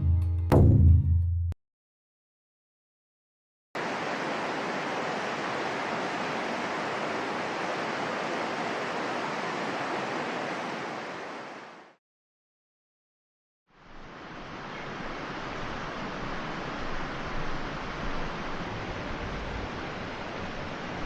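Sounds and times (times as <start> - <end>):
river water rushing: 3.8 - 12.0, 13.8 - 21.0.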